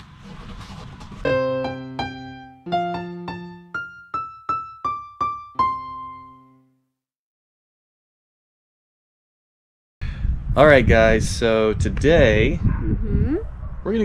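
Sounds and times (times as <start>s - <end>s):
keyboard melody: 1.3s - 6.9s.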